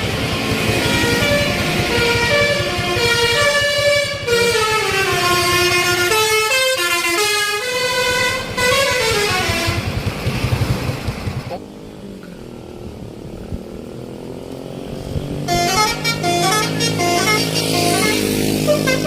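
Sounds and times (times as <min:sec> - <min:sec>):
multi-tone musical air horn: 0:00.6 - 0:10.0, 0:15.5 - 0:19.0.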